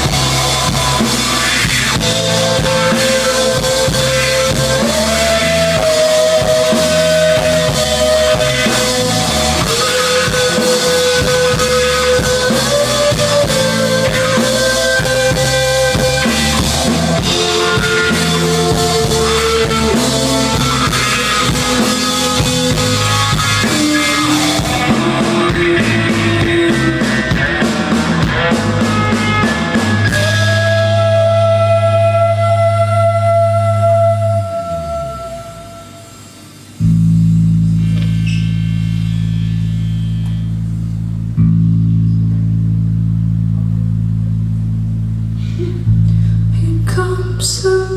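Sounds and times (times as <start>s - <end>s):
drum kit beat: 0.0s - 32.2s
bass guitar: 0.0s - 47.9s.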